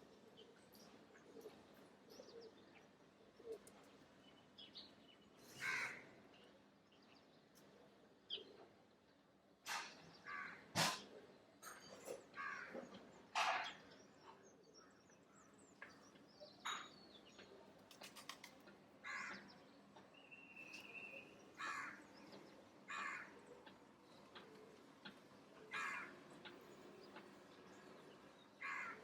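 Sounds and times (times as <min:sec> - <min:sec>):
crows cawing: 0:05.5 - 0:06.1, 0:10.2 - 0:10.7, 0:12.4 - 0:12.8, 0:19.0 - 0:19.5, 0:21.6 - 0:22.1, 0:22.9 - 0:23.5, 0:25.6 - 0:26.3, 0:28.6 - 0:29.0.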